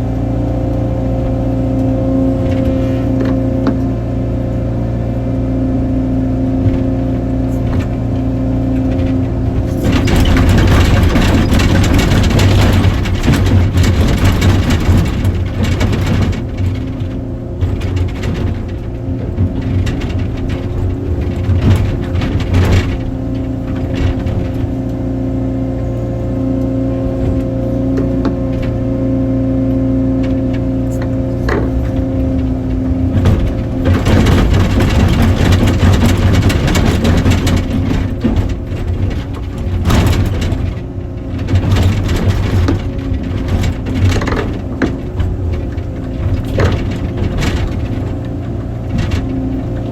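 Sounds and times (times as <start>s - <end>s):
excavator diesel engine running: 0.0s - 49.9s
knocks: 6.6s - 25.3s, 30.0s - 49.9s.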